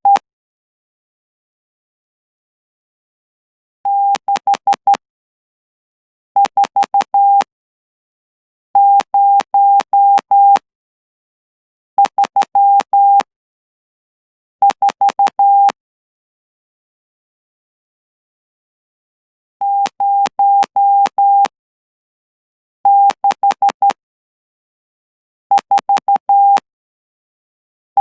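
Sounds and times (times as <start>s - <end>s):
morse code beeps: 8.8s - 10.6s, 14.7s - 15.8s, 19.6s - 21.5s, 25.7s - 26.6s.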